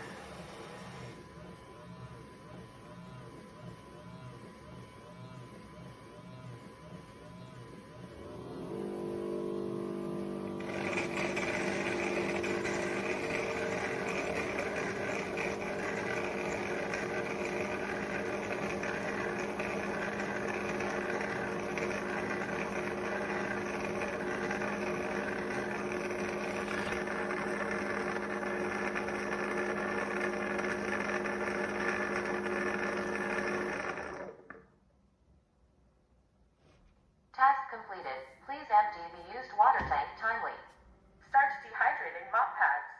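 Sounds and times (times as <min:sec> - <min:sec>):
robot vacuum motor whir: 0:00.0 - 0:34.6.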